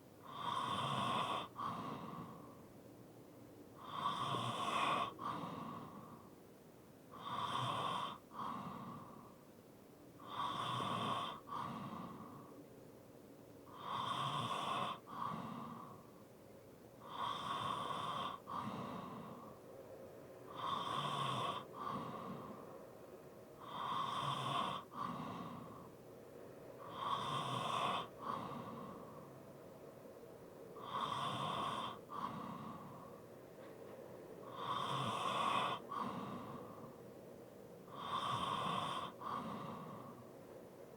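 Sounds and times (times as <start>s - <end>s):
heavy breathing with light snoring: 0.2s - 2.7s, 3.8s - 6.4s, 7.1s - 9.6s, 10.2s - 12.7s, 13.6s - 16.2s, 17.0s - 19.7s, 20.5s - 22.9s, 23.6s - 26.1s, 26.8s - 29.7s, 30.8s - 37.2s, 37.8s - 40.9s.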